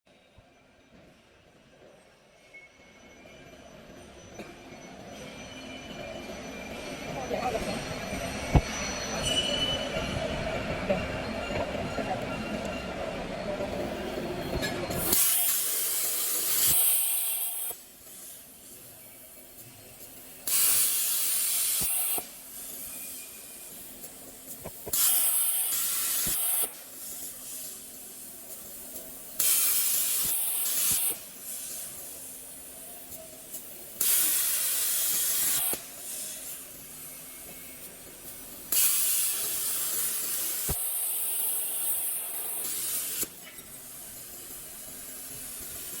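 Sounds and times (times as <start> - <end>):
plasma torch hissing: 14.9 - 46.0.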